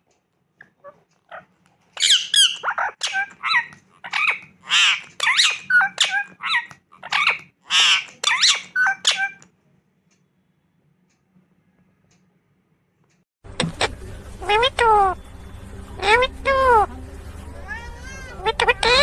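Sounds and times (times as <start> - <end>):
parrot squawking and chirping: 0.7 - 9.4, 14.4 - 16.9, 17.6 - 19.0.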